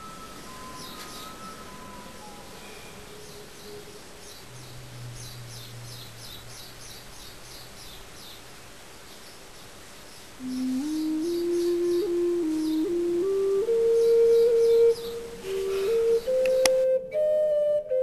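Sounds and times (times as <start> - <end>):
small bird chirping: 0.0 - 12.9.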